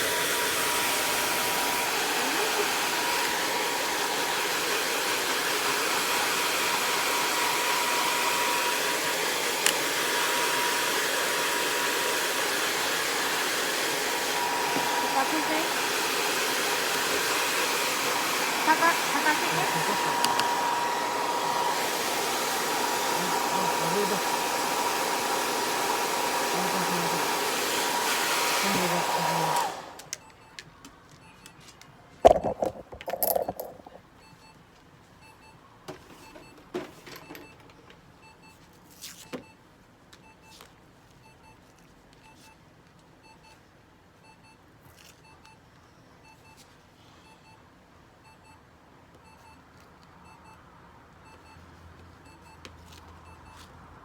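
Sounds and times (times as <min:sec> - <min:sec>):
hair dryer blowing: 0:00.0 - 0:30.2
handling knocks and clicks: 0:32.3 - 0:34.0.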